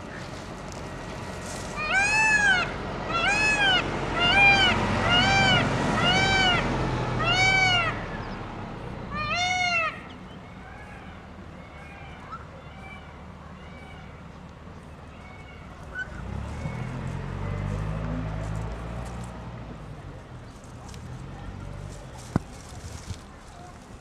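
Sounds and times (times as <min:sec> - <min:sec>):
high-pitched animal calls: 0:01.8 - 0:08.3, 0:09.1 - 0:10.2.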